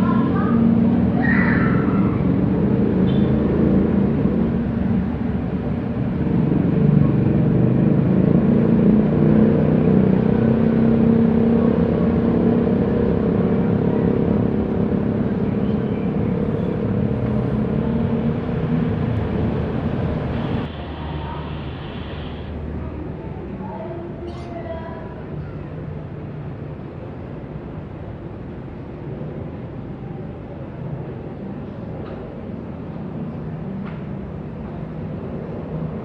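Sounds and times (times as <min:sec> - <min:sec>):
jet engines rumbling: 0:11.2 - 0:23.6.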